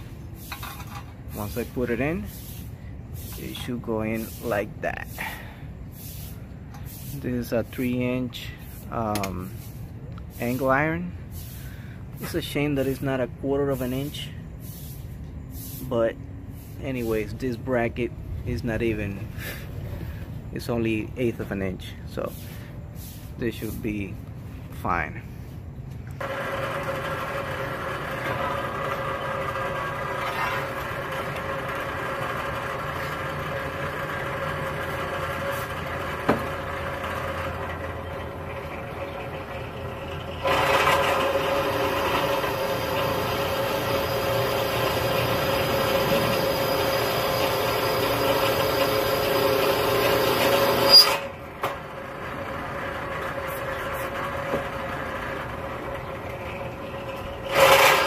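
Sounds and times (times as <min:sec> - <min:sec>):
scraping hiss of cutting steel: 0:00.0 - 0:13.1, 0:13.7 - 0:17.0, 0:22.2 - 0:23.8
power cutting tool whining: 0:40.4 - 0:51.3, 0:57.5 - 0:58.0.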